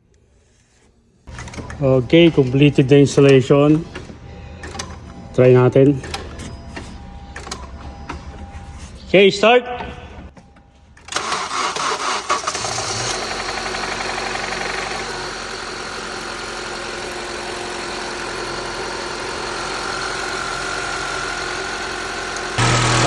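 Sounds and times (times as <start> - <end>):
car engine starting and idling: 11.0 - 23.0.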